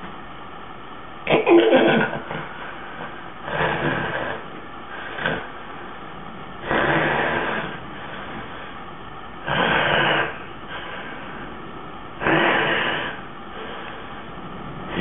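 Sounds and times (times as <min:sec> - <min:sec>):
man snoring: 0:03.4 - 0:05.5, 0:06.6 - 0:08.4, 0:09.4 - 0:10.5, 0:12.2 - 0:13.2.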